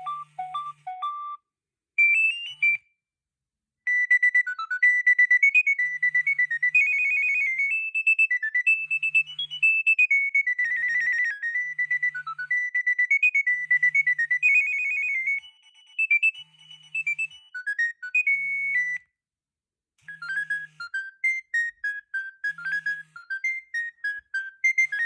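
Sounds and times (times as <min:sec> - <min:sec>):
mobile phone ringtone melody: 0:00.0 - 0:01.4, 0:02.0 - 0:02.8, 0:05.9 - 0:07.7, 0:08.7 - 0:19.0, 0:20.0 - 0:25.0.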